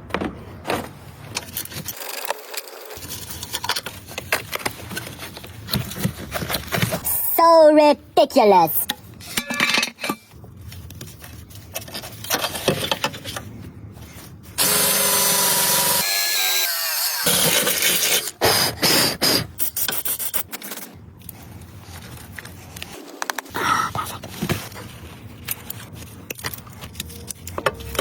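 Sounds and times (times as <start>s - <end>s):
power tool running: 14.6s - 18.2s.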